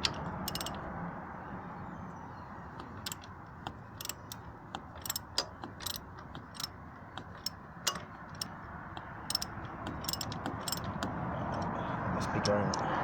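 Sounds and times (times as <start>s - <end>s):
ratchet wrench clicking: 0.0s - 0.8s, 2.9s - 3.3s, 3.9s - 11.2s.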